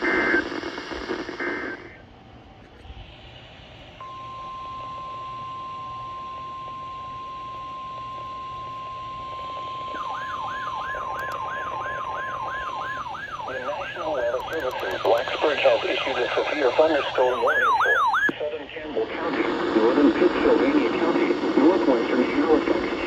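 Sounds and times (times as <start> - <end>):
siren-like alarm sweeping: 4.0 - 18.3
steady alarm tone: 4.0 - 18.3.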